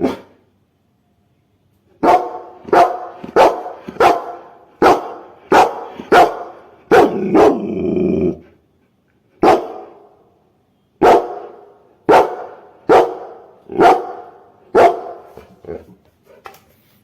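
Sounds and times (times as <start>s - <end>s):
dog barking: 0.0s - 0.4s, 2.0s - 7.6s, 9.4s - 10.1s, 11.0s - 15.8s.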